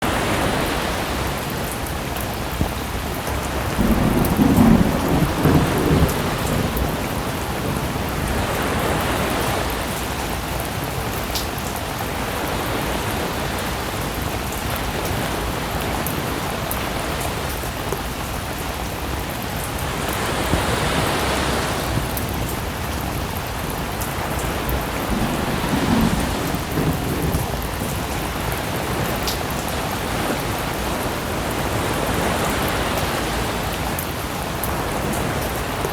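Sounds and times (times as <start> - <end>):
sea waves washing in: 0.0 - 35.9
steady rain: 0.0 - 35.9
low rolls of thunder: 2.3 - 10.2, 19.8 - 33.8.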